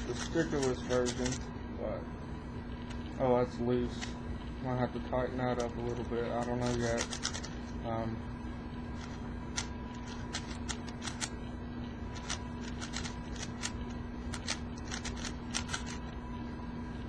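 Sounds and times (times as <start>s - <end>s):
speed cube clicking: 0.1s - 1.4s, 6.3s - 7.6s, 9.0s - 11.3s, 12.1s - 16.1s.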